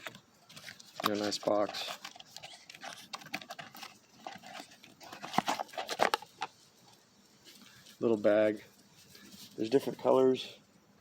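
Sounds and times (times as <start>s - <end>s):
packaging rustling and tapping: 0.0s - 6.6s.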